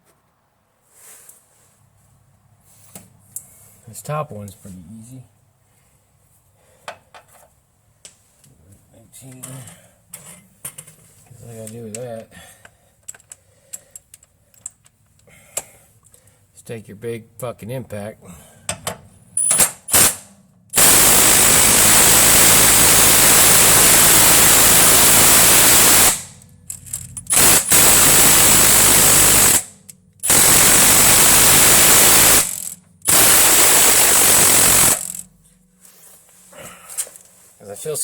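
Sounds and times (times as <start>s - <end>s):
impact wrench hammering: 20.8s - 35.3s.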